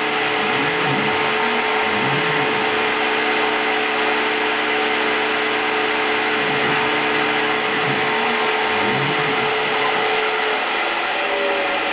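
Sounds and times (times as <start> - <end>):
milling machine whirring: 0.0 - 11.9
axis motor tones: 0.3 - 3.5, 6.2 - 11.9.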